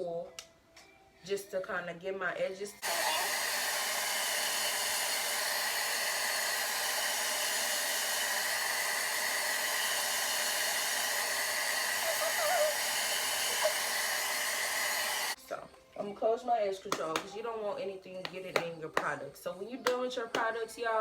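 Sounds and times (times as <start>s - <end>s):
blow dryer running: 2.8s - 15.4s.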